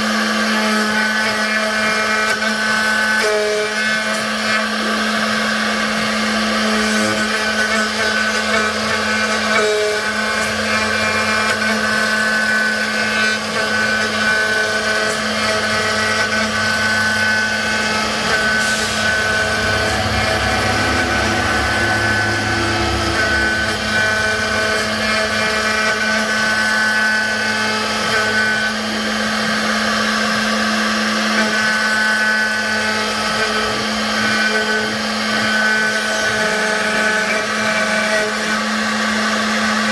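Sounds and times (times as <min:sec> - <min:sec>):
cnc router spindle carving wood: 0:00.0 - 0:39.9
high whining tones: 0:06.0 - 0:28.4.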